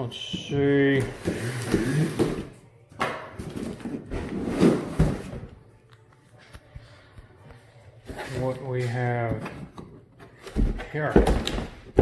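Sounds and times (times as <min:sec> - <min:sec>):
cardboard rustling and scraping: 0:03.4 - 0:05.6.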